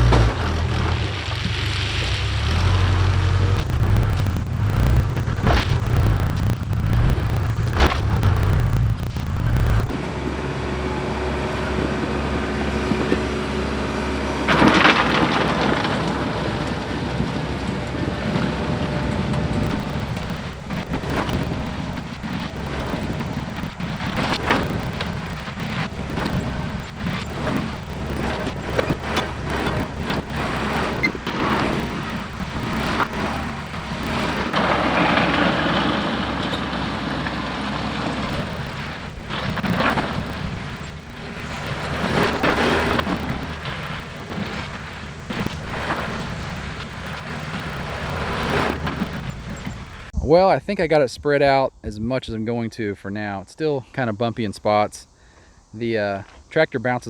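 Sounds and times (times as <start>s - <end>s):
gravel pouring from a bucket: 0.0s - 10.0s, 14.2s - 16.8s, 19.6s - 37.1s, 38.1s - 50.1s
diesel engine running: 0.0s - 50.2s.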